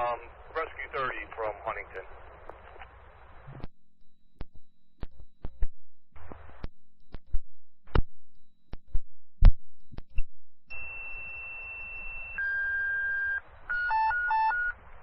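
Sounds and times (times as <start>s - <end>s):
radio static bursts: 0.0s - 3.7s
faint steady hum: 0.0s - 7.2s, 10.7s - 15.0s
radio clicks and pops: 0.6s - 8.1s.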